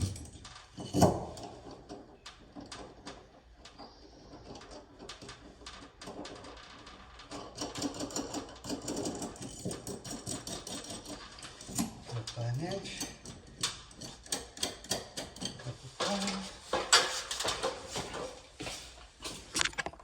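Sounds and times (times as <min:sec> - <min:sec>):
metal clicks of nuts and washers: 0:13.0 - 0:15.6.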